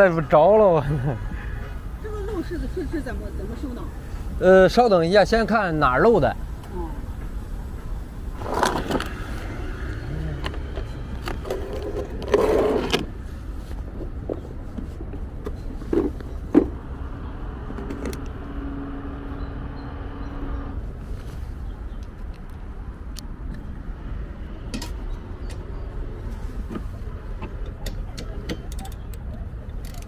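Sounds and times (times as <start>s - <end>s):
low vehicle rumble: 0.0s - 30.0s
knocks and scrapes: 7.7s - 16.8s.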